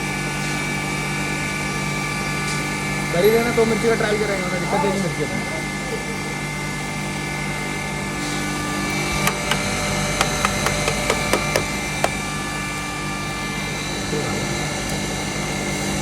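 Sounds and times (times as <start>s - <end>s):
sharp clicks and knocks: 9.2s - 12.2s.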